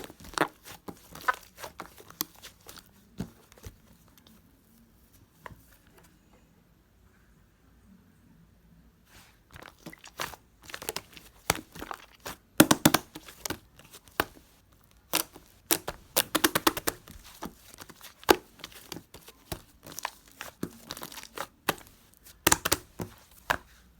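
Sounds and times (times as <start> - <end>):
slime clicking and crackling: 0.0 - 3.7, 9.6 - 23.8.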